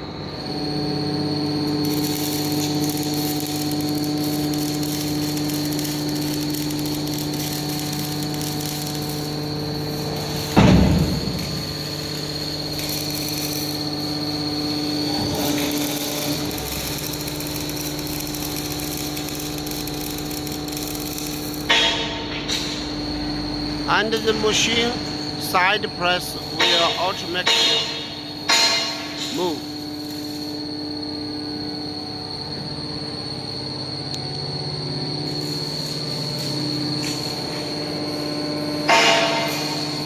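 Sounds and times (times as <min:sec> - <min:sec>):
hydraulic pump hum with whine: 0:00.0 - 0:40.0
loud metal bang: 0:10.5 - 0:12.2.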